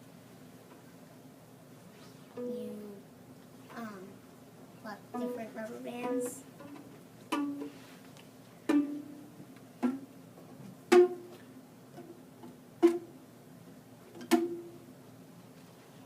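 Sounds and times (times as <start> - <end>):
rubber bands plucked twanging: 10.9 - 11.3.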